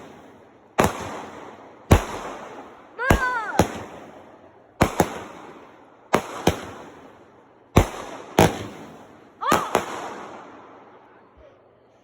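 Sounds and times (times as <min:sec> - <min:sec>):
fireworks bangs echoing: 0:00.0 - 0:11.3
person shouting: 0:03.0 - 0:03.6, 0:09.4 - 0:09.8.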